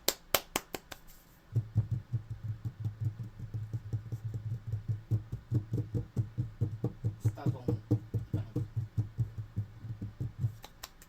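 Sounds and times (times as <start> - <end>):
low pulsing hum: 1.5 - 10.6.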